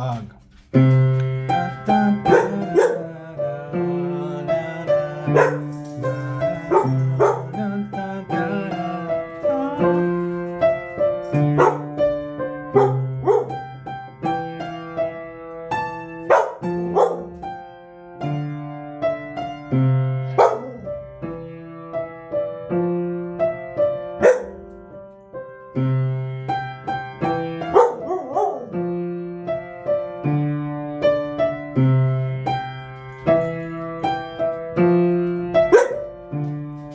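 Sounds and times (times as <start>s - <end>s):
keyboard piano melody: 0.0s - 36.9s
dog barking: 1.6s - 3.6s, 5.1s - 7.8s, 11.4s - 12.0s, 12.7s - 13.7s, 16.2s - 17.5s, 20.3s - 21.1s, 24.2s - 24.8s, 27.6s - 28.8s, 35.6s - 36.2s.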